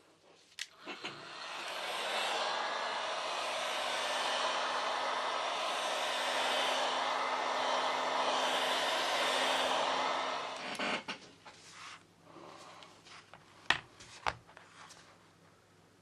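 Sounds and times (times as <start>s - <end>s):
hot air gun blowing: 0.7s - 11.1s.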